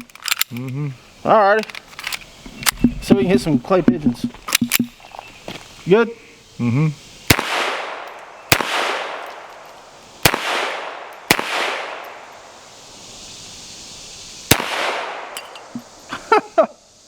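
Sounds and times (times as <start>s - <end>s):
pistol shots with echo: 7.3s - 9.6s, 10.2s - 12.3s, 14.5s - 15.6s.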